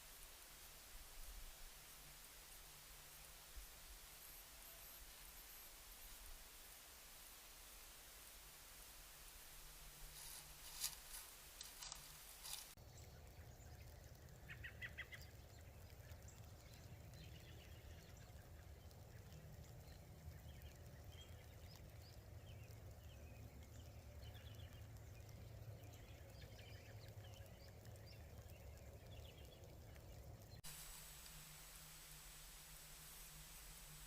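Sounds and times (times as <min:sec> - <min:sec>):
faint bird chirps: 0:00.6 - 0:06.5, 0:10.0 - 0:30.7
low steady rumble: 0:08.9 - 0:34.0.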